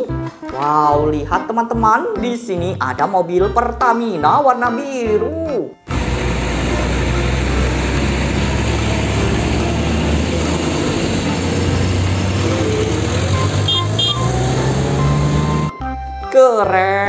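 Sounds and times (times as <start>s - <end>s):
heavy vehicle engine running: 5.9s - 15.7s
rushing noise: 5.9s - 15.7s.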